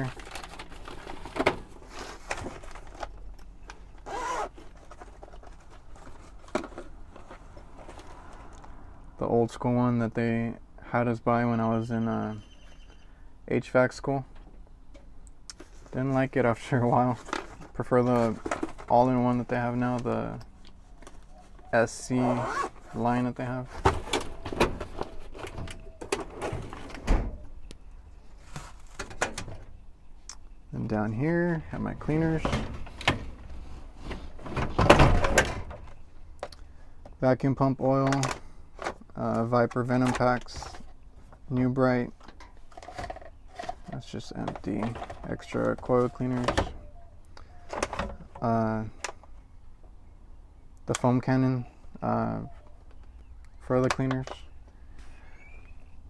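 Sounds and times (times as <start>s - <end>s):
zipper pulled: 4.0s - 4.7s, 22.2s - 23.0s.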